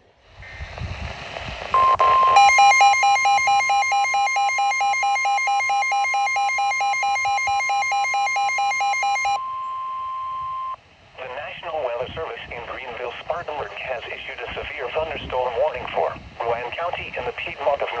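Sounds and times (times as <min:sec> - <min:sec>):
electronic alarm beeping: 0:01.8 - 0:09.6
steady alert tone: 0:02.4 - 0:09.4.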